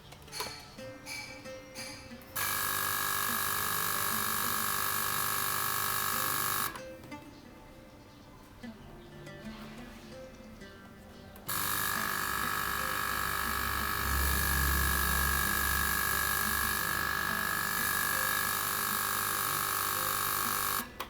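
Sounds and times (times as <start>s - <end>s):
air pump motor whining: 2.4s - 6.8s, 11.5s - 21.0s.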